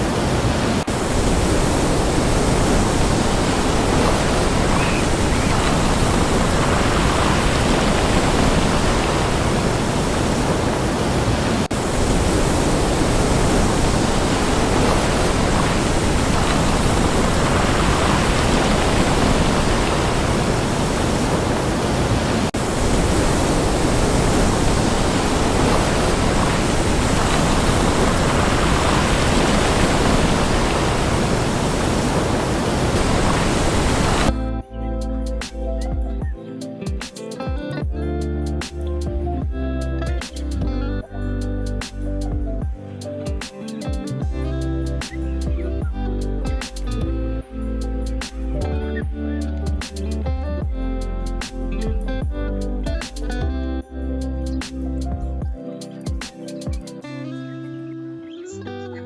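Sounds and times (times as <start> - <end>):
sea surf rushing: 0.0 - 34.4
wind: 0.0 - 37.5, 38.1 - 57.5.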